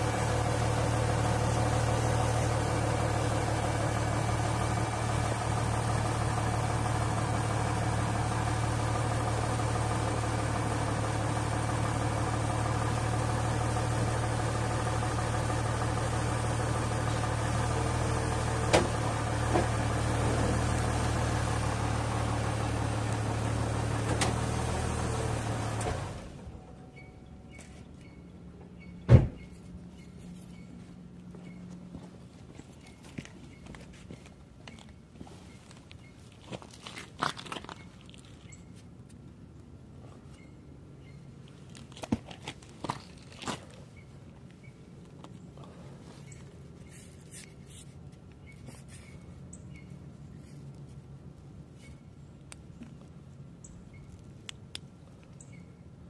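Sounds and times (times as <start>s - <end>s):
engine idling: 0.0s - 32.0s.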